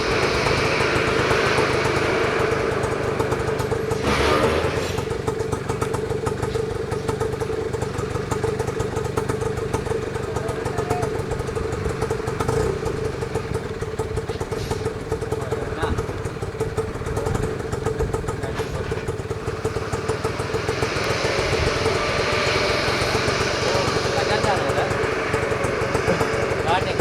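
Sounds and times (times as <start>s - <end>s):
rush of noise: 0.0s - 5.7s, 18.8s - 27.0s
vehicle engine idling: 0.0s - 27.0s.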